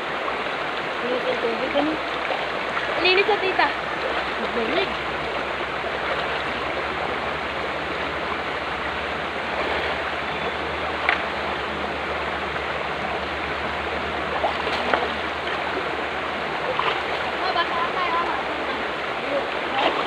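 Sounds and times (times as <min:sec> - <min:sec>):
stream running over rocks: 0:00.0 - 0:20.0
splashes or knocks: 0:14.4 - 0:15.8.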